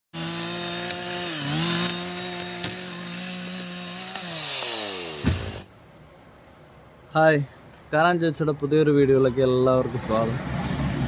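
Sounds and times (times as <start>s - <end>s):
chainsaw cutting wood: 0.1s - 5.7s
low thud: 5.2s - 5.7s.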